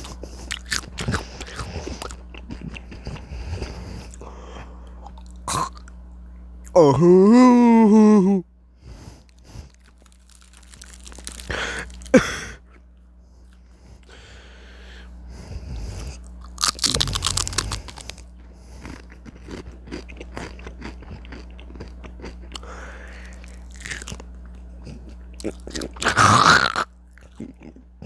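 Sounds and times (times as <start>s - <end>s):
potato chips crunching: 0.0s - 3.2s, 9.2s - 12.5s, 16.2s - 27.9s
low steady hum: 0.0s - 28.0s.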